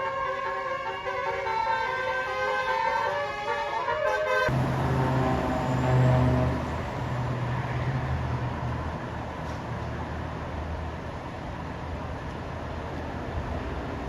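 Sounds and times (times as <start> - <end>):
musical bus horn: 0.0 - 8.0
bus engine humming: 4.5 - 10.2.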